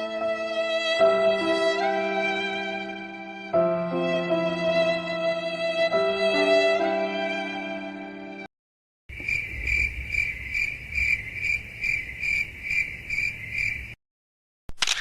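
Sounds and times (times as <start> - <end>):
sad violin music: 0.0 - 8.5
cricket chirping: 9.1 - 14.0.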